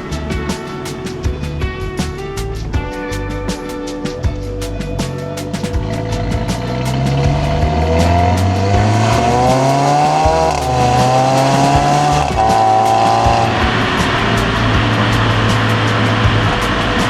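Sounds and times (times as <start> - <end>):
tyre and wind rushing noise: 5.7 - 17.0
car engine accelerating: 6.1 - 17.0.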